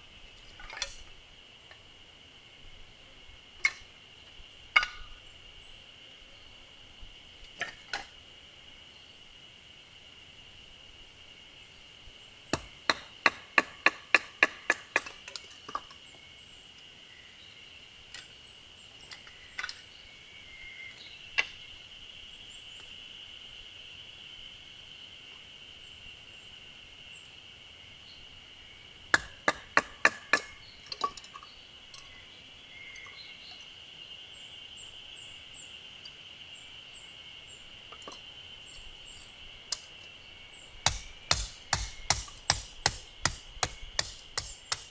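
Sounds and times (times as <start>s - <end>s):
firewood splitting knocks: 12.6s - 15.1s, 29.2s - 30.5s, 40.8s - 44.9s.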